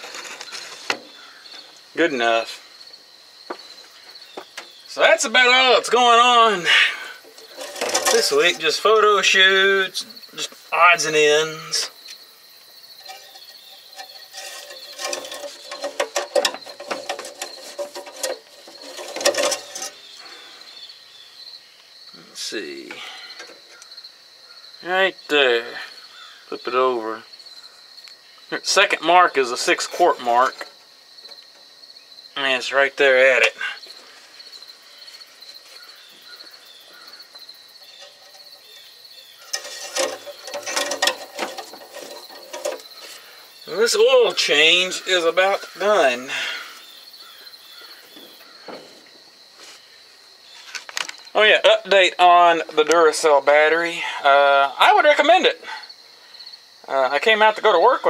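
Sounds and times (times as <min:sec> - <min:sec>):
crickets chirping: 0:00.0 - 0:58.0
metallic clicking and rattling of tools: 0:13.0 - 0:20.0, 0:39.5 - 0:43.0.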